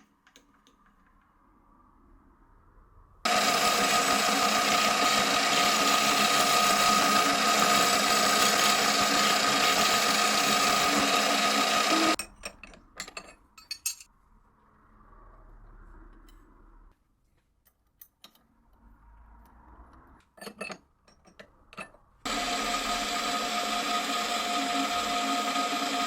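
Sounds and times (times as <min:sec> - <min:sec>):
power milling tool cutting: 0:03.3 - 0:12.2, 0:22.3 - 0:26.0.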